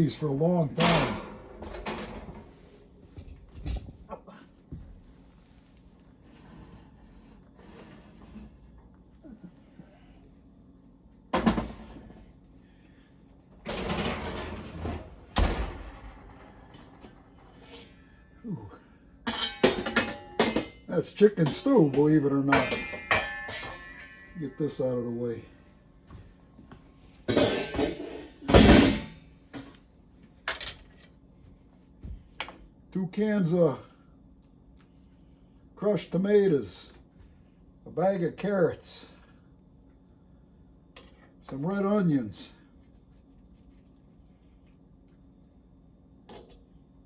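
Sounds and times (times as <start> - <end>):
pots and pans clattering: 0.8 - 2.6, 13.6 - 15.1, 19.2 - 24.5, 27.3 - 29.8
sliding scrape: 6.2 - 8.6
cookware clank: 22.5 - 24.4.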